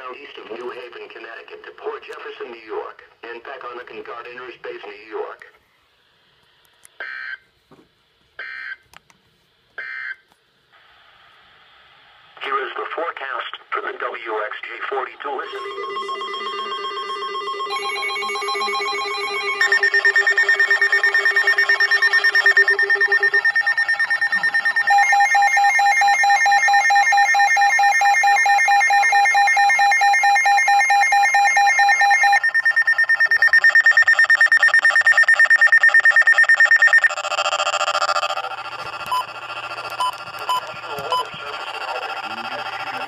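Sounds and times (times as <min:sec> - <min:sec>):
electronic alarms beeping rapidly: 0:15.4 - 0:43.0.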